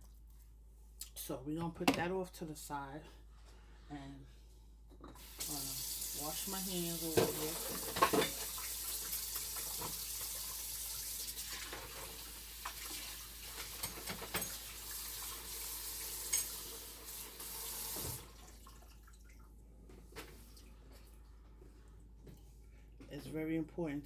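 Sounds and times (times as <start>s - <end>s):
tap water running: 5.1s - 19.6s.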